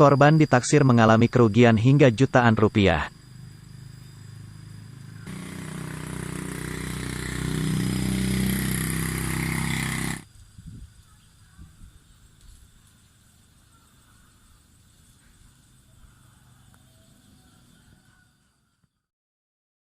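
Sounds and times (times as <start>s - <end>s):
small engine running: 3.1s - 10.3s.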